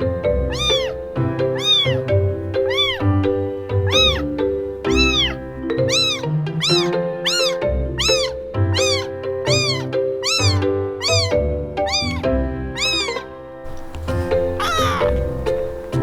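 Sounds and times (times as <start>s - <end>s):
background music: 0.0s - 16.0s
kitten meowing: 0.0s - 16.0s.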